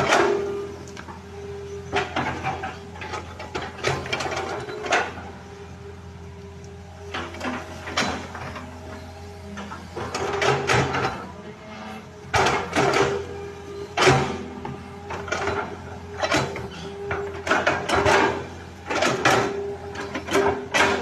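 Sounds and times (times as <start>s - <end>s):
excavator engine running: 0.0s - 21.0s.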